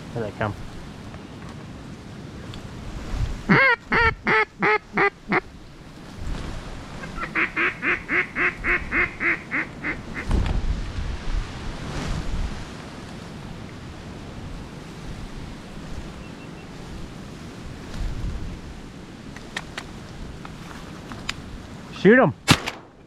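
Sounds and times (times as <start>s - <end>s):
wind rumbling on microphone: 0.0s - 22.0s
duck call quacking: 3.5s - 5.4s, 7.0s - 10.3s.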